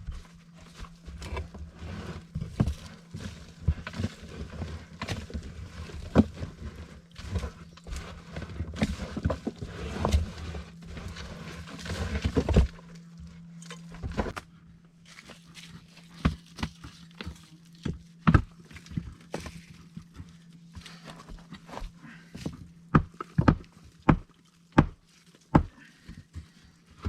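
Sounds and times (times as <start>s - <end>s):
logs scraping: 0.0s - 14.4s.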